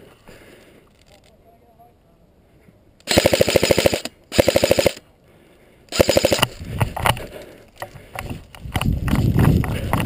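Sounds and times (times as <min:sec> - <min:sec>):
airsoft gun full-auto bursts: 0:03.0 - 0:05.0, 0:05.9 - 0:06.6
scattered clicks and knocks: 0:06.0 - 0:10.0.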